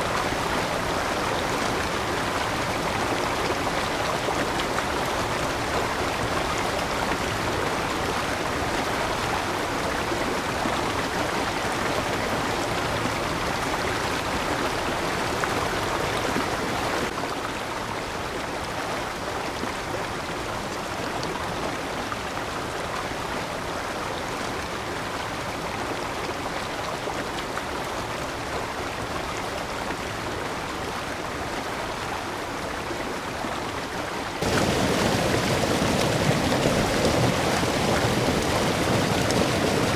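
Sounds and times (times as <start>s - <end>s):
water rushing over rocks: 27.2s - 39.9s.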